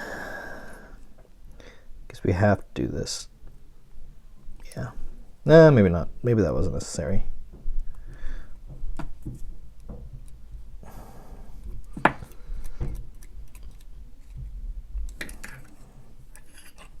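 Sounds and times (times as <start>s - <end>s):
plastic parts clicking and rattling: 11.9s - 17.0s.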